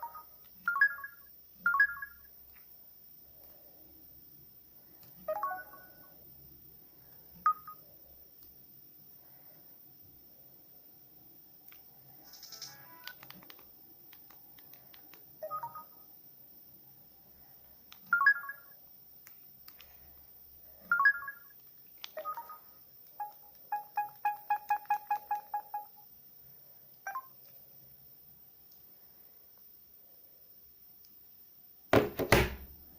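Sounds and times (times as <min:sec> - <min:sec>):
rapid electronic beeps: 0:23.2 - 0:26.0.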